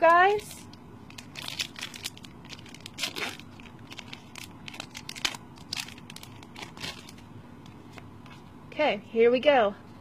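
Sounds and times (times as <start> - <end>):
foil wrapper crinkling and tearing: 1.0 - 7.2.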